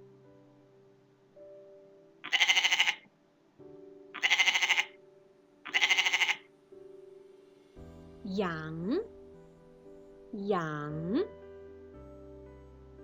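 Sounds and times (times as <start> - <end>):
soft background music: 0.0 - 13.0
sheep bleating: 2.2 - 3.0, 4.2 - 5.0, 5.7 - 6.5.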